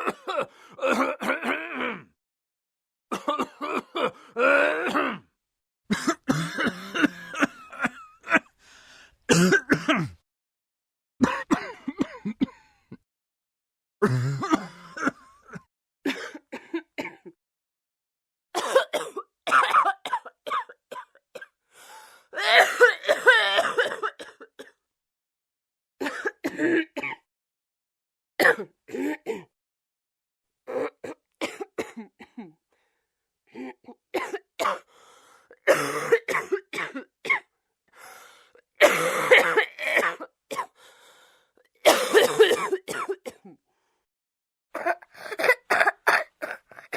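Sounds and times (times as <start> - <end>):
person coughing: 0.0 - 2.1, 3.1 - 5.2, 5.9 - 8.5, 9.3 - 10.2, 11.2 - 12.7, 14.0 - 17.4, 18.6 - 21.5, 22.4 - 24.8, 26.0 - 27.3, 28.4 - 29.6, 30.7 - 32.6, 33.6 - 34.9, 35.6 - 37.5, 38.8 - 40.8, 41.8 - 43.6, 44.8 - 46.9.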